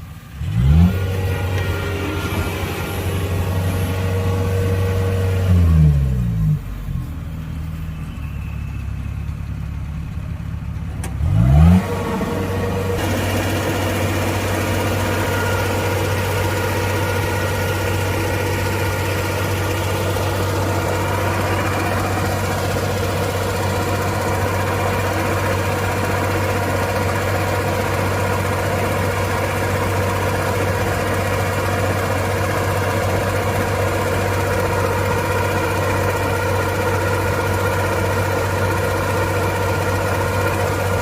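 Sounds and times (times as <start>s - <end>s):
diesel engine revving: 0.0s - 41.0s.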